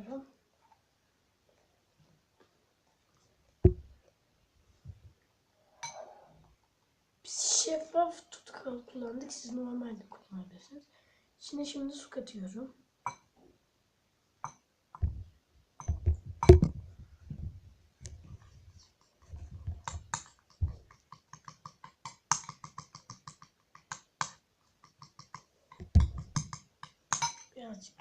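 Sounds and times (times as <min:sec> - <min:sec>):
dull knocks: 0:03.6 - 0:03.9
utensil tapping against bowl: 0:19.0 - 0:27.5.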